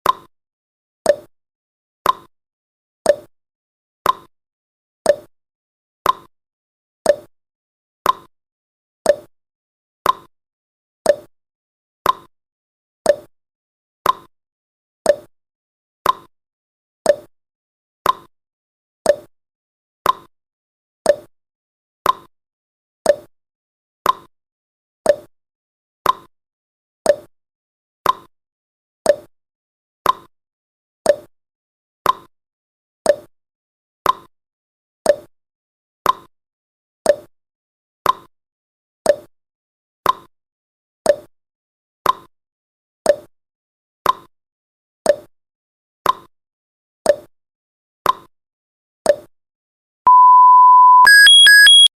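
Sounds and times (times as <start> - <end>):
timer ticking: 50.1 - 51.9.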